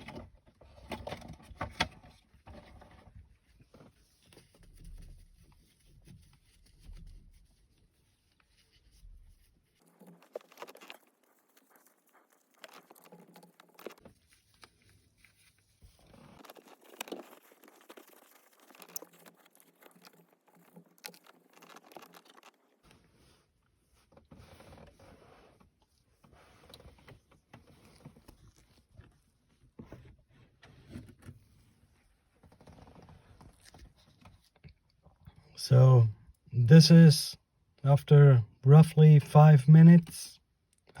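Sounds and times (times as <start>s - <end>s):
scratchy rubbing on plastic: 2.5s - 34.6s.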